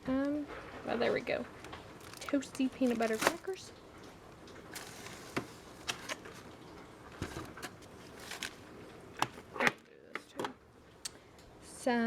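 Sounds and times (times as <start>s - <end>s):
packaging rustling: 1.5s - 3.7s, 4.6s - 9.5s.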